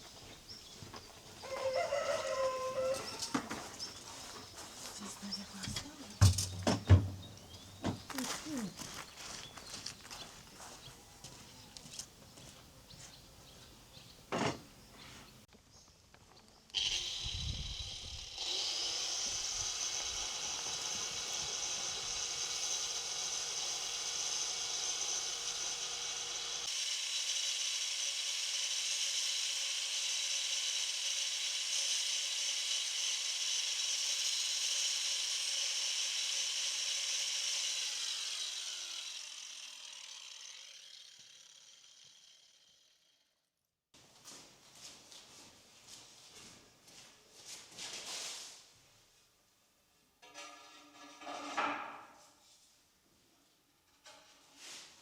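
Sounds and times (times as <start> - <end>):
electric power tool winding down: 16.7 - 43.4.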